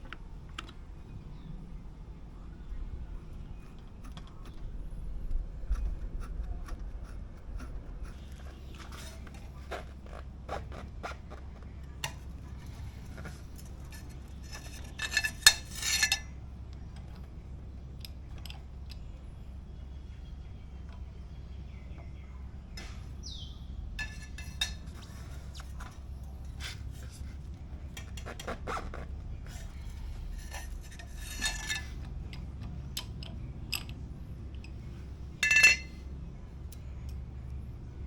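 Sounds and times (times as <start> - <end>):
steady low hum: 0.0 - 38.0
metal tools clinking and rattling: 12.0 - 16.4, 24.0 - 27.2, 29.5 - 34.0, 34.6 - 36.0
ringing metallic clank: 35.4 - 36.0.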